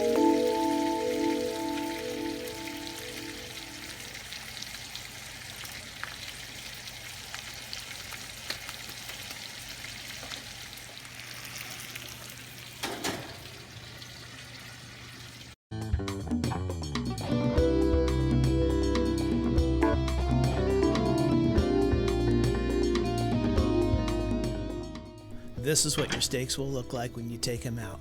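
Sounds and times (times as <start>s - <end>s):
steaks sizzling in a frying pan: 0.0s - 15.5s.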